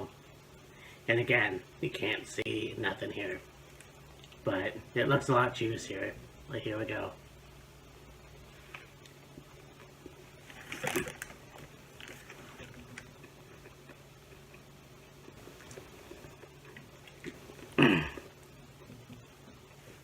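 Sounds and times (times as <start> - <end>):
low steady hum: 0.0 - 20.0
faint chewing: 3.6 - 4.4, 8.6 - 20.0.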